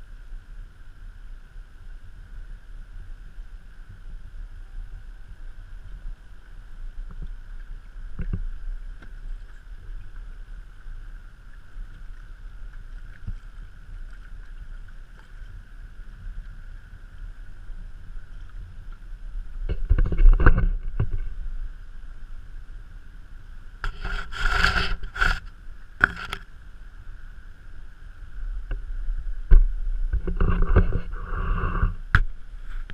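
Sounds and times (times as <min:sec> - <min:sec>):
low rumble: 0:00.0 - 0:24.0, 0:24.9 - 0:32.9
faint steady hum: 0:00.0 - 0:32.9
water sloshing against hull: 0:01.9 - 0:32.9
paddle splashing: 0:03.6 - 0:22.6.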